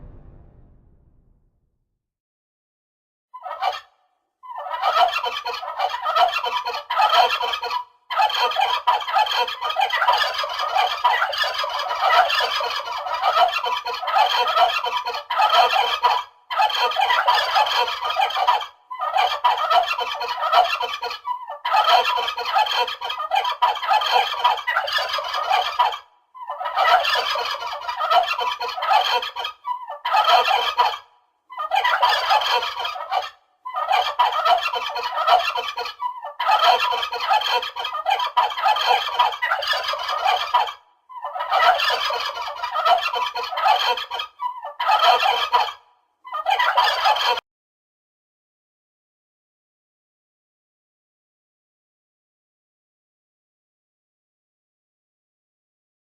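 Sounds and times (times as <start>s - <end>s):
turkeys gobbling: 3.4s - 47.4s.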